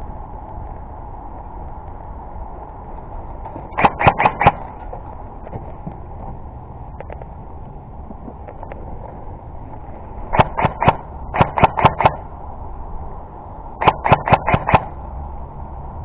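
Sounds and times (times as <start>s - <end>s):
airsoft gun shots: 3.7s - 4.7s, 10.3s - 12.3s, 13.8s - 15.0s.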